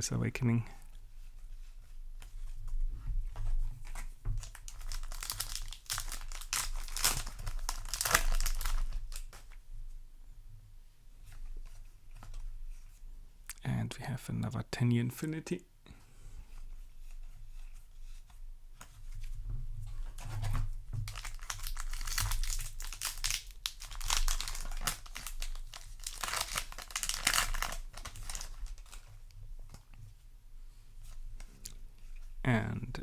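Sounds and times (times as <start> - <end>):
foil wrapper crinkling and tearing: 4.4 - 9.6, 21.0 - 29.2.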